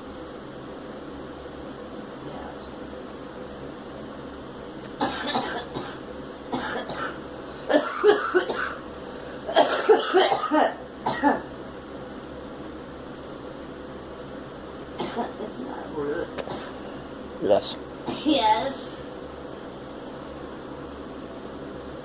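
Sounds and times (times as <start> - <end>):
girl coughing: 5.0 - 11.5, 15.0 - 15.4, 16.4 - 16.9, 18.1 - 18.5.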